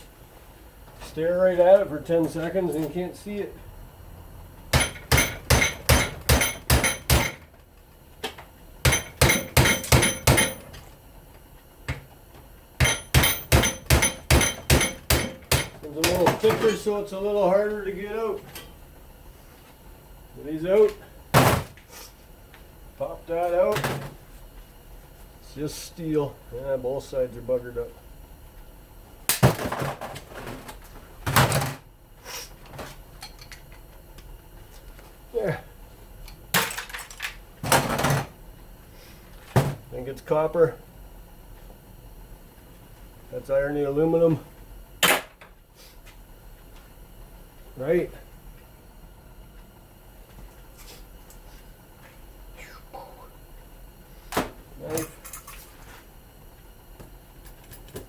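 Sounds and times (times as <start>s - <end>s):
hammer striking metal: 4.7s - 7.4s, 8.8s - 10.7s, 12.8s - 16.2s.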